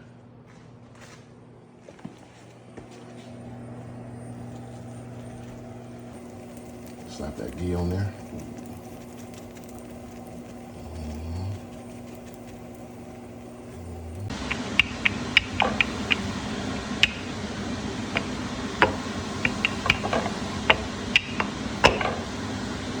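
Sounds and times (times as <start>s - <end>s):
sharp pops and crackles: 4.6s - 22.5s
ghee sizzling in hot pan: 4.7s - 10.7s.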